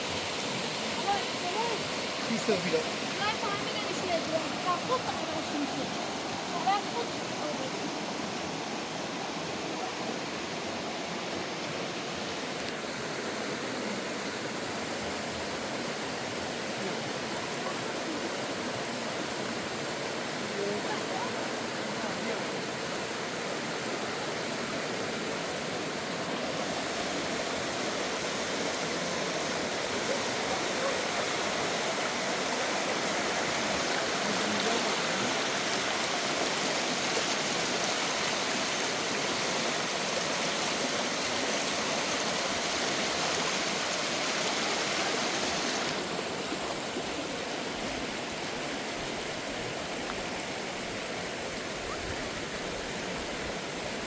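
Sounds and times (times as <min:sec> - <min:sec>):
flowing water rushing: 0:00.0 - 0:54.0.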